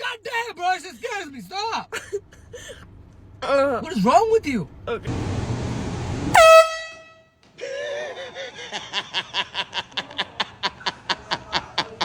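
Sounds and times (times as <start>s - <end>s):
air horn blast: 6.3s - 7.4s
person laughing: 7.6s - 12.0s.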